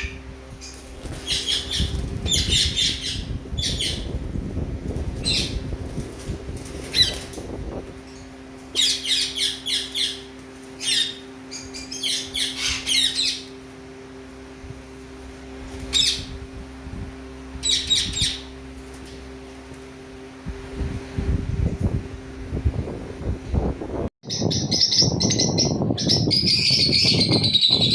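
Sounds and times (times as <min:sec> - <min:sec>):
parrots calling: 0:00.0 - 0:04.1, 0:08.7 - 0:13.6, 0:17.6 - 0:18.6.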